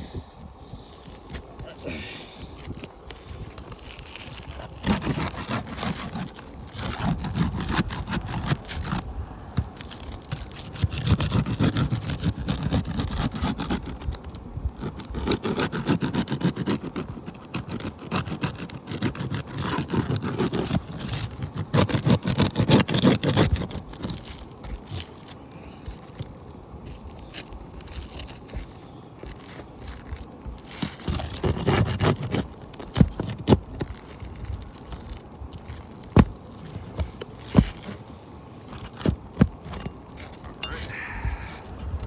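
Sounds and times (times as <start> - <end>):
roof shingle scraping and tearing: 0.7 - 42.0.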